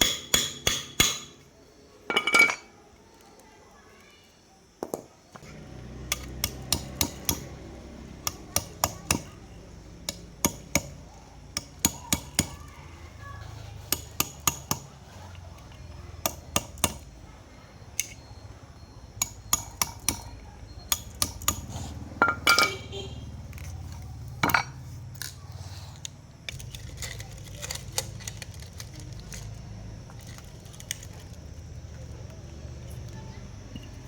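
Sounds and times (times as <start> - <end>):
hammer tapping on metal: 0.0 - 1.4, 6.1 - 7.5, 13.9 - 14.9, 19.2 - 20.3, 20.9 - 22.8.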